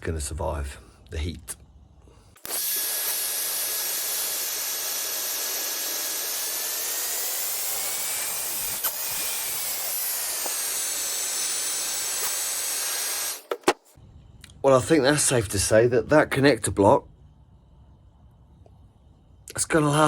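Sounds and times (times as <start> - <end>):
hot air gun blowing: 2.3 - 13.7.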